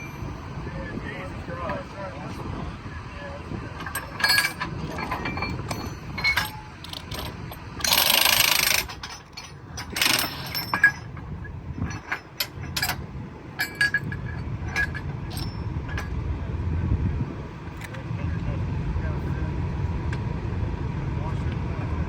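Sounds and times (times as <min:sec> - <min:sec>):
low engine rumble: 0:00.0 - 0:22.0
tools clanking on steel rails: 0:03.7 - 0:16.2.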